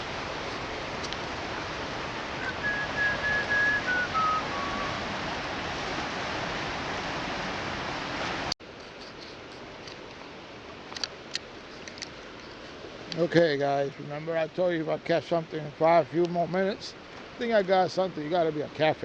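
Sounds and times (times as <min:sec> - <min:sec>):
river water rushing: 0:00.0 - 0:19.0
whistled descending notes: 0:02.4 - 0:05.0.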